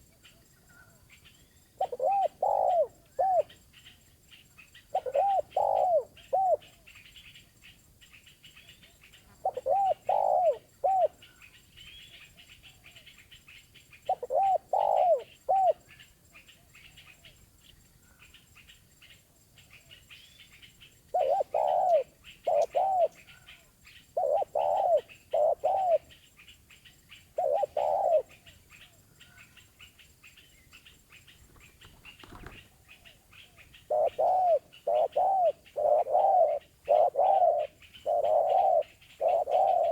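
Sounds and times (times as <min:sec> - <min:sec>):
small birds chirping faintly: 0:00.0 - 0:39.9
dove cooing: 0:01.8 - 0:03.6, 0:04.8 - 0:06.9, 0:09.3 - 0:12.0, 0:14.1 - 0:16.0, 0:21.1 - 0:26.2, 0:27.3 - 0:29.4, 0:31.6 - 0:39.9.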